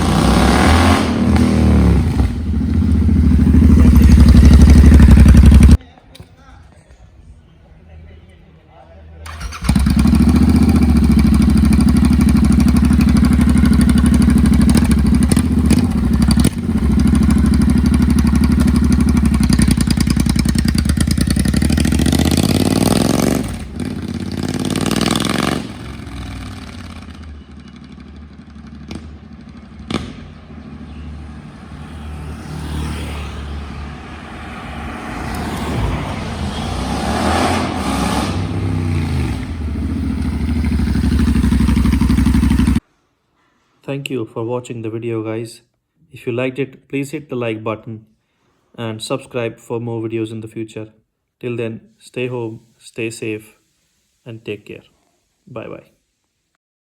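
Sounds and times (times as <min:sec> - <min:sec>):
motorcycle engine exhaust note: 0:00.0 - 0:05.8, 0:09.3 - 0:42.8.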